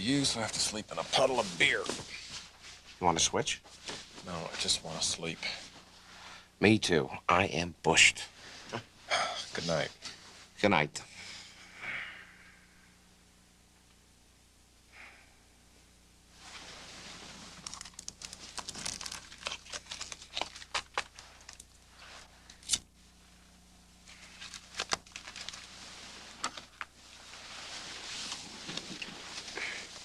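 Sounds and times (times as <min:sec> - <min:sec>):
crinkly rustling and handling: 0:00.0 - 0:06.3, 0:16.4 - 0:22.8, 0:24.0 - 0:30.0
sharp clicks and crackles: 0:17.6 - 0:21.8.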